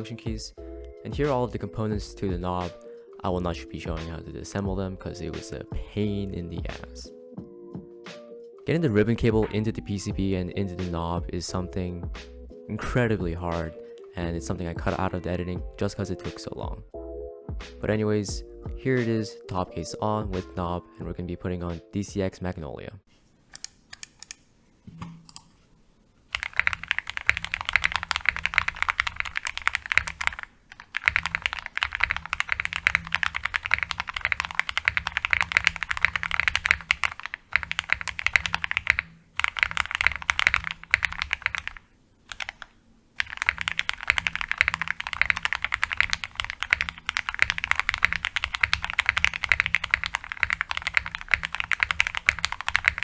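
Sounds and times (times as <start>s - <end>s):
mechanical keyboard typing: 26.3s - 53.0s.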